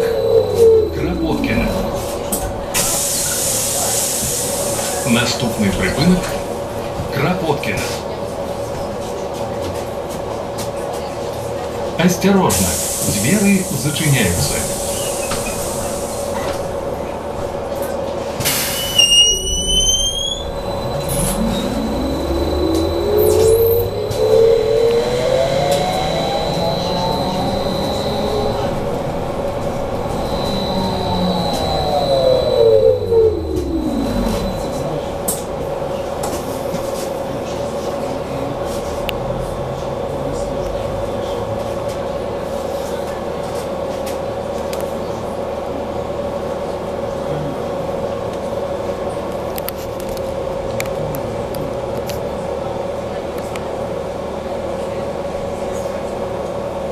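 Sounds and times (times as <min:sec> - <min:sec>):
electric traction drive whining: 0:00.0 - 0:03.3, 0:18.4 - 0:37.0.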